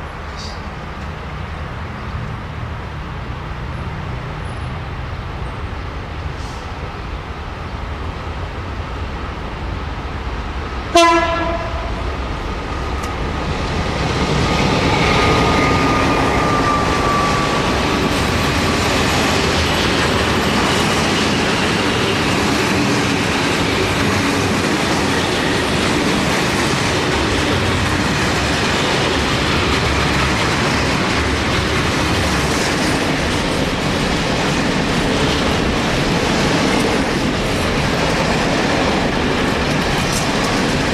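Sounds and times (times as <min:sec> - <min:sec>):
train rumble: 0:00.0 - 0:40.9
train horn blast: 0:10.9 - 0:12.3
wagons clattering on rails: 0:12.0 - 0:40.9.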